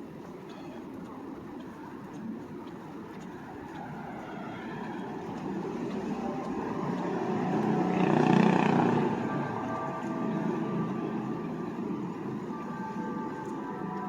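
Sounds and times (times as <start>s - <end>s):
vehicle driving past: 3.8s - 12.2s.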